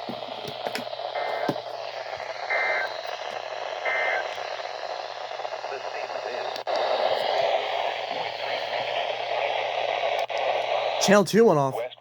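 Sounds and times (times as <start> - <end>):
radio static hiss: 0.0 - 12.0
short digital data bursts: 2.4 - 5.3.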